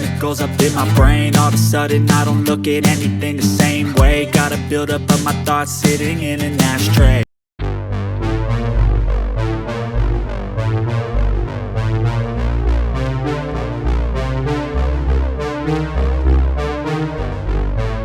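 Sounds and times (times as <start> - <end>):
steady beat: 0.0 - 7.2
deep bass notes: 0.0 - 18.0
electric piano and synth chords: 7.6 - 18.0.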